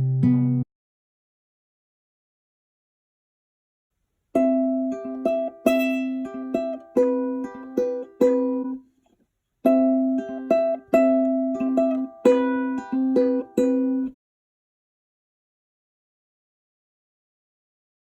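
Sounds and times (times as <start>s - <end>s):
ukulele plucked melody: 0.0s - 0.6s, 4.3s - 8.9s, 9.6s - 14.2s.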